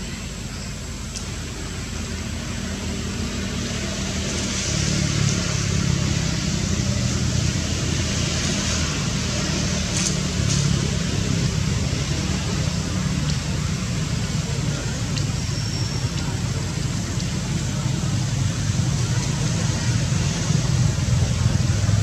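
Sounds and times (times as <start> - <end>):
faint clicks: 1.1 - 1.4, 15.0 - 17.4.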